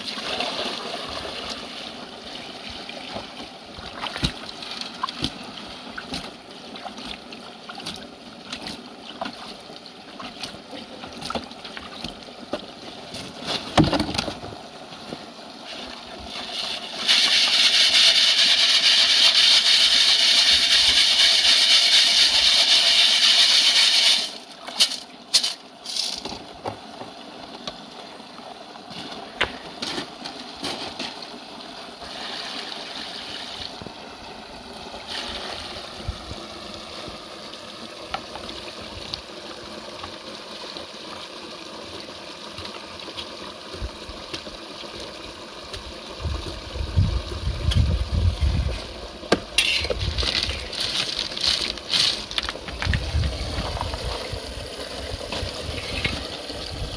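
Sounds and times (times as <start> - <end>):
creek water splashing: 0.0 - 13.8, 48.4 - 56.6
stones clicking: 50.1 - 53.0.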